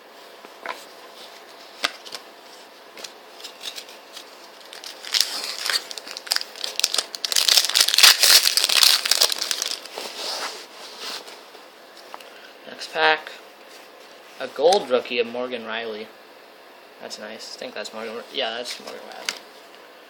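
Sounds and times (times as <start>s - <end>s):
plastic wrapper crinkling: 3.4s - 10.0s.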